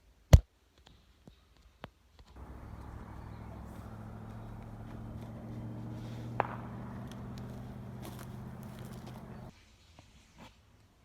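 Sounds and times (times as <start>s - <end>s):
low mechanical hum: 2.4s - 9.5s.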